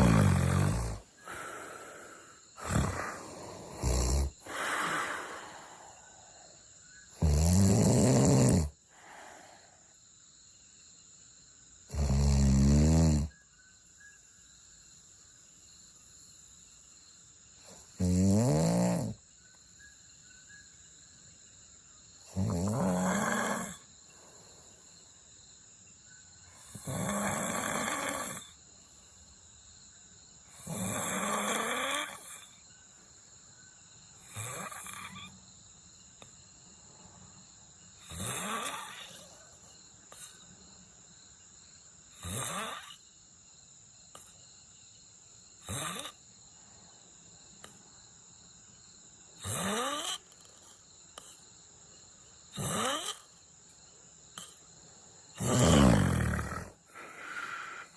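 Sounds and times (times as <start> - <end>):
person snoring: 0.0 - 6.4, 7.2 - 9.7, 11.9 - 13.3, 17.8 - 19.2, 22.3 - 23.8, 26.7 - 28.5, 30.6 - 32.4, 38.1 - 39.3, 42.2 - 43.0, 49.4 - 50.2, 52.6 - 53.2, 55.4 - 57.9.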